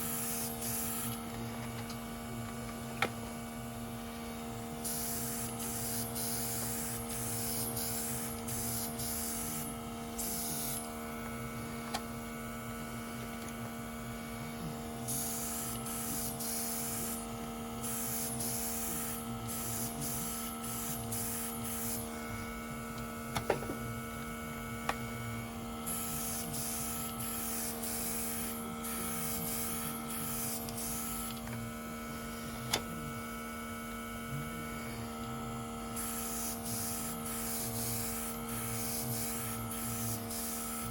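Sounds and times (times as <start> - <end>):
airbrush hissing spray: 0.0 - 1.2, 4.8 - 10.9, 15.1 - 22.0, 25.9 - 31.4, 36.0 - 40.9
compressor humming: 0.0 - 40.9.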